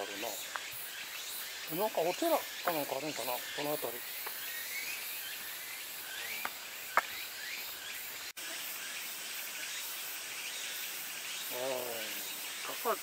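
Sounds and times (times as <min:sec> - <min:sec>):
downward-sweeping calls: 0:00.0 - 0:13.0
high-pitched insect chorus: 0:00.0 - 0:13.0.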